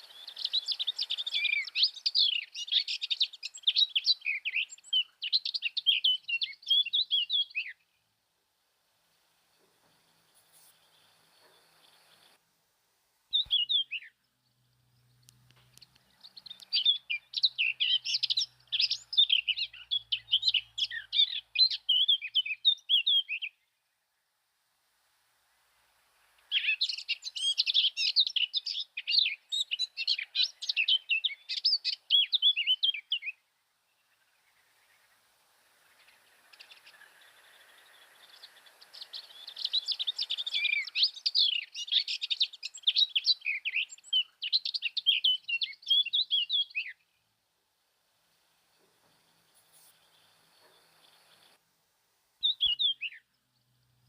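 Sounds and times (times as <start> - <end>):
bird twittering high chirps: 0.0 - 8.0, 13.3 - 23.6, 26.4 - 47.2, 52.4 - 54.0.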